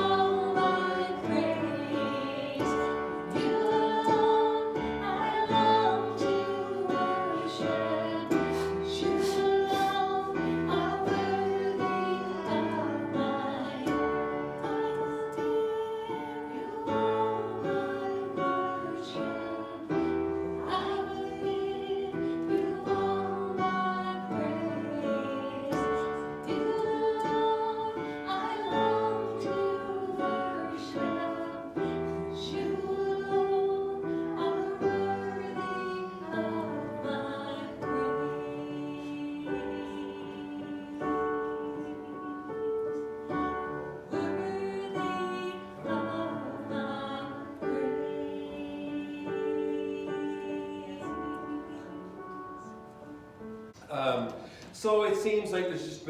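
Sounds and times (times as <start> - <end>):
guitar: 0.0 - 38.4
voices singing: 0.0 - 53.3
piano: 0.0 - 56.0.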